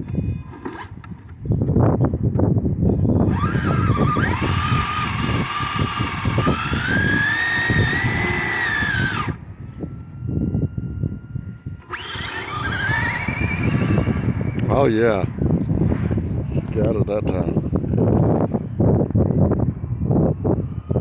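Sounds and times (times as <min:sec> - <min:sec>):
faint steady whine: 0:00.0 - 0:16.4
electric motor whining: 0:00.0 - 0:16.8, 0:17.6 - 0:21.0
tyres and wind rumble: 0:00.0 - 0:21.0.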